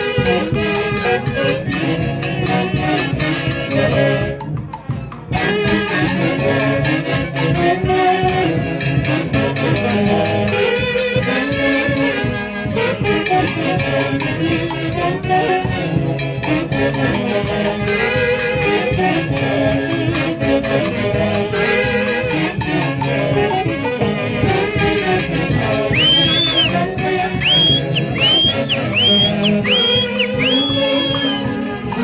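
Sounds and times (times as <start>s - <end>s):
band playing upbeat dance music: 22.7s - 32.0s.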